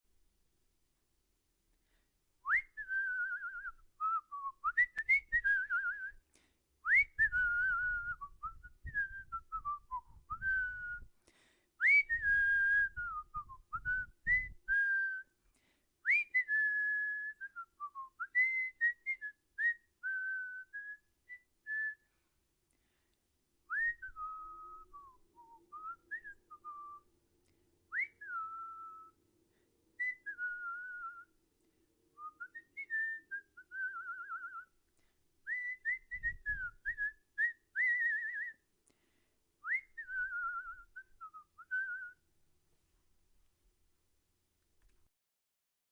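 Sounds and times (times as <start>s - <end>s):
person whistling a tune: 2.4s - 11.1s, 11.8s - 15.4s, 16.0s - 22.2s, 23.7s - 27.1s, 27.9s - 29.2s, 30.0s - 31.3s, 32.2s - 34.8s, 35.5s - 38.7s, 39.6s - 42.2s.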